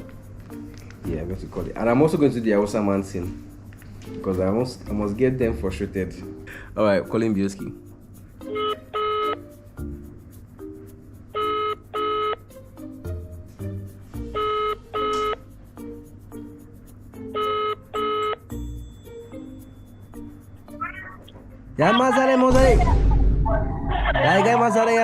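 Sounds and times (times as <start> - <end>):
soft background music: 0.0 - 23.5
telephone ringback beeps: 8.6 - 9.4, 11.4 - 12.4, 14.4 - 15.4, 17.4 - 18.4.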